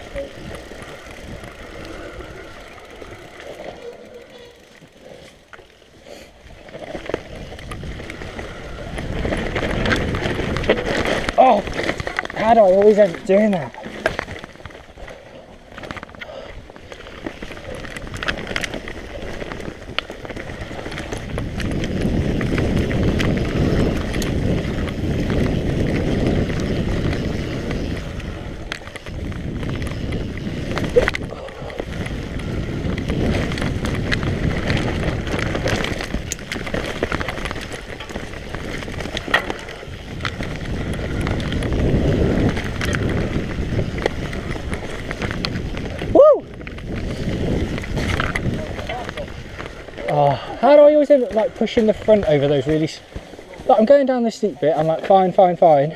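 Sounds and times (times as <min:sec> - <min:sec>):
bike tyres rumbling over dirt: 0:00.0 - 0:55.9
bike knocks and rattles: 0:15.7 - 0:50.2.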